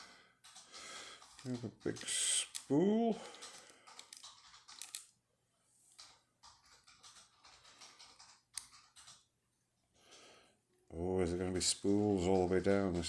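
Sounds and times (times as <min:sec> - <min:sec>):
clicks of small metal lock parts: 0:04.0 - 0:05.1.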